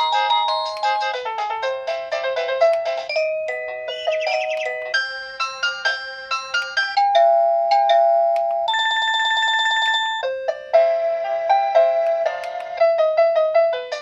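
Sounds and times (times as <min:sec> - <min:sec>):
electronic alarm beeping tunes: 0:03.9 - 0:05.0.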